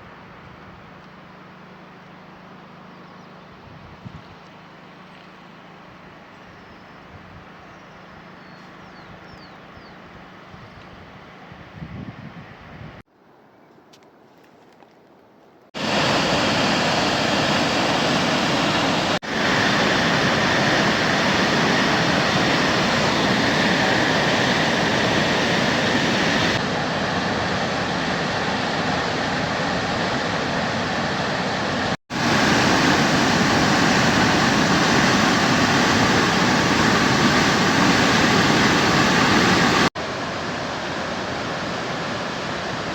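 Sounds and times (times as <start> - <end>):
waterfall roaring: 15.8 - 42.9.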